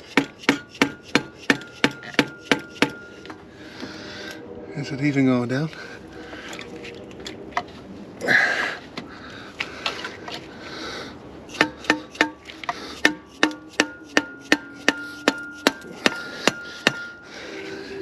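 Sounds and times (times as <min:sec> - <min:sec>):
hammer strikes on metal: 0:00.1 - 0:03.0, 0:11.5 - 0:12.4, 0:13.0 - 0:17.2.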